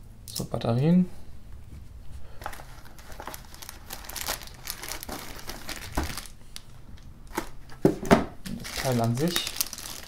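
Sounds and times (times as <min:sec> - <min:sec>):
plastic packaging crinkling: 0:02.4 - 0:06.7, 0:08.5 - 0:10.0.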